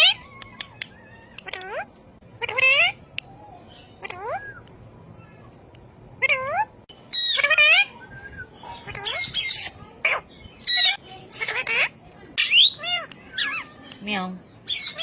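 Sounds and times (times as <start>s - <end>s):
parrot squawking: 0.0s - 3.0s, 3.7s - 4.7s, 6.2s - 8.0s, 8.6s - 13.8s, 14.7s - 15.0s.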